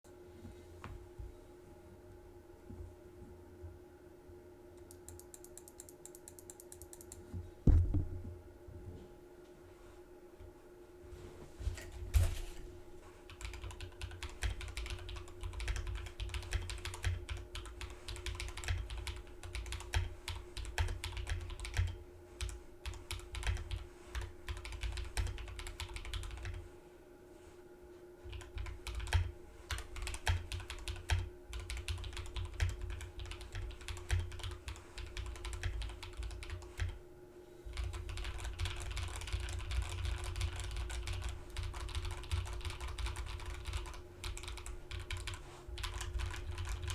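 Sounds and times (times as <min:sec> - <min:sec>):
mechanical keyboard typing: 0:04.8 - 0:07.2, 0:13.3 - 0:26.6, 0:28.3 - 0:37.0, 0:37.7 - 0:46.9.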